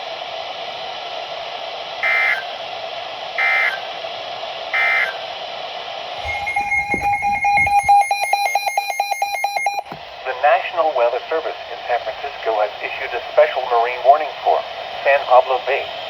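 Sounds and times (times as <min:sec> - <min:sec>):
radio static: 0:06.2 - 0:08.1
pulsed electronic alarm beeping: 0:06.2 - 0:09.9.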